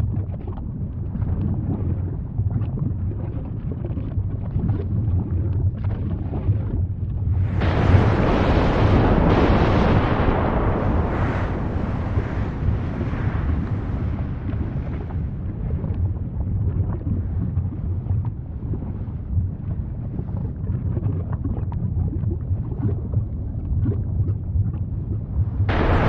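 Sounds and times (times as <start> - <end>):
small crackles and pops: 0.0 - 26.0
volcano rumbling: 5.2 - 26.0.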